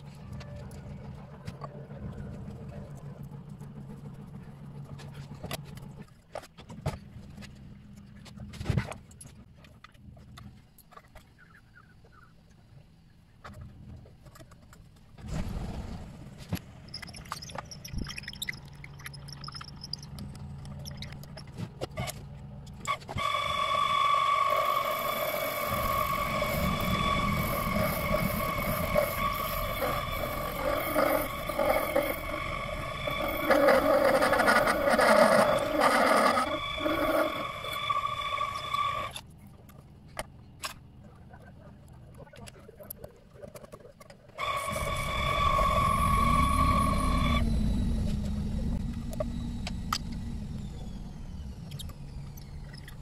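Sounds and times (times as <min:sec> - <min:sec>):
electric motor whining: 0:22.9 - 0:39.2, 0:44.4 - 0:53.0.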